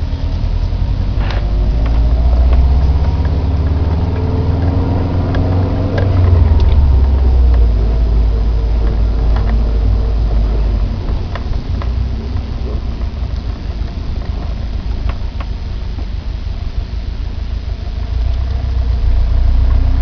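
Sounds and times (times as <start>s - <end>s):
car engine running: 0.0s - 20.0s
light ticks: 1.2s - 16.2s, 18.2s - 19.0s.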